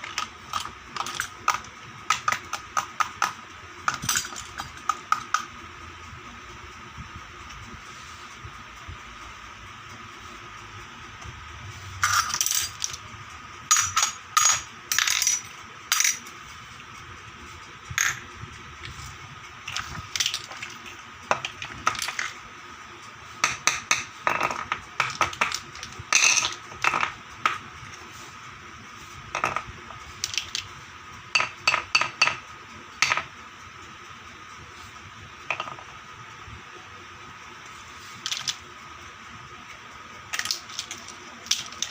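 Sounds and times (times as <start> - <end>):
toy kitchen pieces clicking: 0.0 - 5.5, 19.7 - 20.8, 30.2 - 30.7, 38.2 - 38.6, 40.3 - 41.9.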